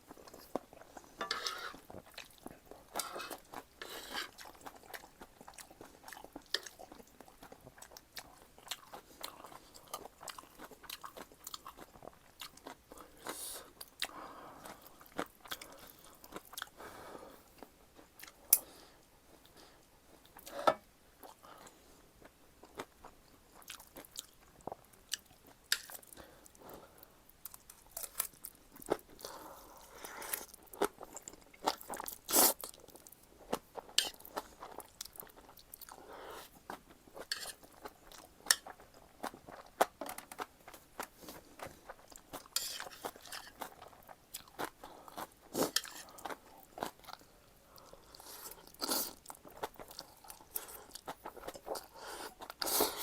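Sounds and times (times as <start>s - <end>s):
chewing and crunching noodles: 0.0s - 53.0s.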